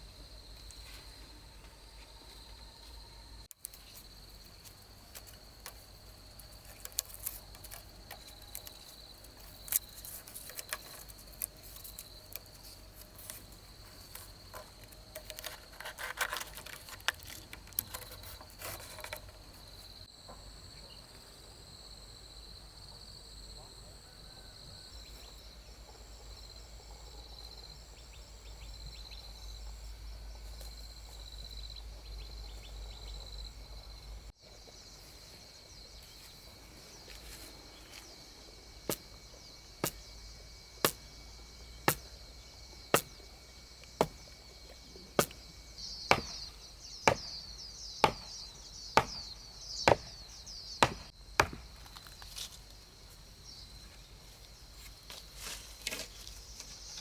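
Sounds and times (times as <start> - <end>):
high chorus of insects: 0.0 - 57.0
tool chopping into wood: 39.8 - 40.0, 41.9 - 42.1, 42.9 - 43.2, 44.0 - 44.3, 45.2 - 45.4, 46.1 - 46.5, 47.1 - 48.4, 49.0 - 50.2, 50.8 - 52.0.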